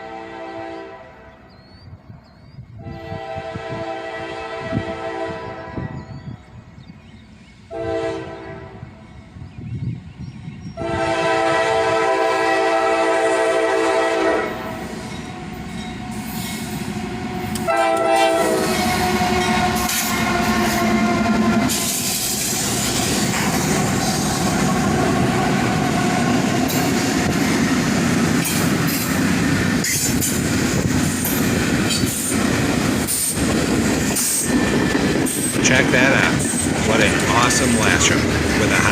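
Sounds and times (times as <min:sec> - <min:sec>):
diesel locomotive horn blasts: 0:00.0 - 0:01.4, 0:02.8 - 0:06.3, 0:07.7 - 0:09.0, 0:10.8 - 0:22.0, 0:24.0 - 0:27.4
locomotive engine rumble: 0:15.0 - 0:38.9.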